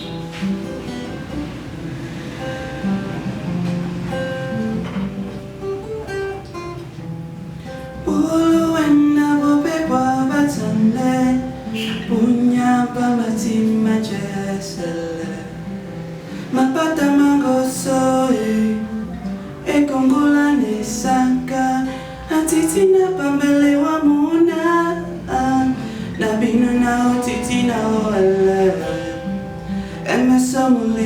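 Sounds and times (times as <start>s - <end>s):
acoustic guitar strumming: 0.0s - 31.0s
person singing: 8.0s - 29.4s, 30.0s - 31.0s.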